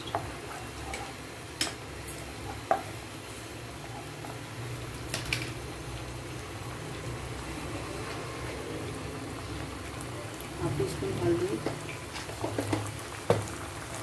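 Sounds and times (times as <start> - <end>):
spoon stirring food in a pan: 0.0 - 3.0, 11.6 - 13.6.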